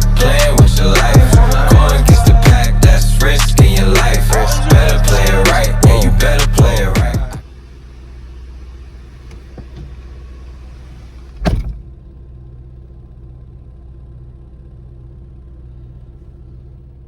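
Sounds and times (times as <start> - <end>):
car rumbling: 0.0 - 17.0
sharp thump: 11.4 - 11.8.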